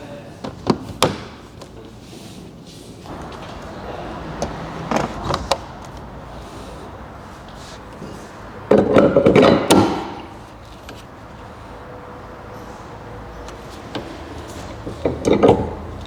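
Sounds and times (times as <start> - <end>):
towbar clattering rattle: 13.6 - 16.0.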